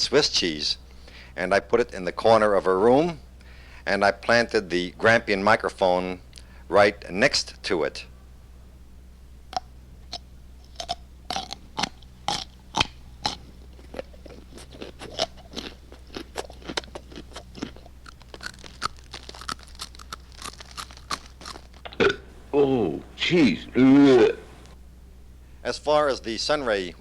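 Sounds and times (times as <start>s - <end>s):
low steady hum: 0.0s - 27.0s
mouse gnawing and crunching: 9.5s - 21.9s.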